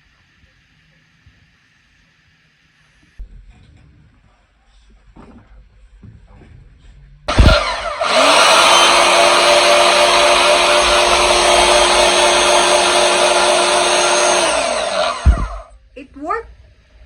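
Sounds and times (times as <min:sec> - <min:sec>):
band saw motor whining: 0:07.3 - 0:15.7.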